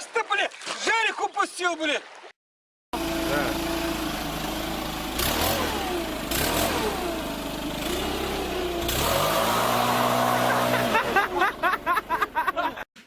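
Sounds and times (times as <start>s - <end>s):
engine running: 3.0s - 12.8s.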